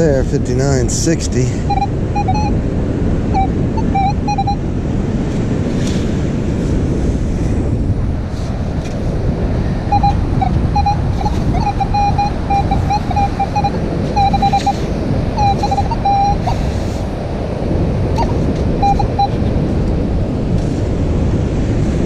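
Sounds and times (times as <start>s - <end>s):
wind buffeting microphone: 0.0s - 22.0s
metal detector beeping: 1.6s - 2.6s, 3.3s - 4.6s, 9.9s - 16.8s, 18.2s - 19.4s.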